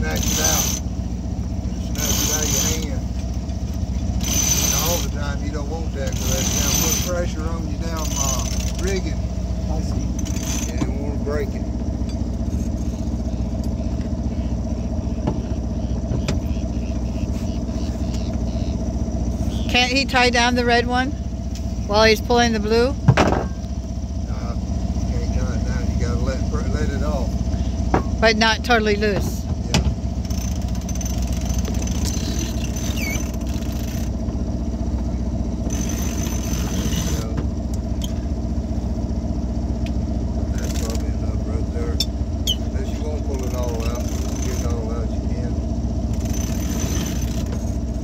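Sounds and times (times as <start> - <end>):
boat engine running: 0.0 - 48.0
faint short squeak: 31.9 - 33.8, 42.0 - 42.7.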